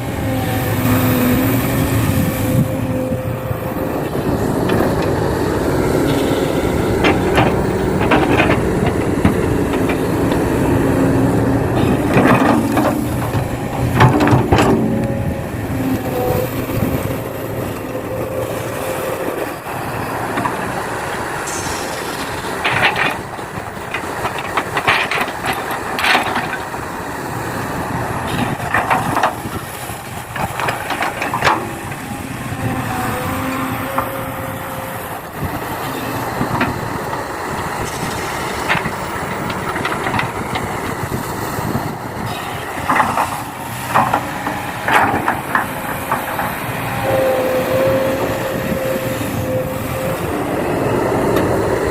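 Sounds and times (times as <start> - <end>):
model excavator running: 0.0 - 51.9
dirt scraping and clattering: 4.0 - 17.7, 20.2 - 27.2.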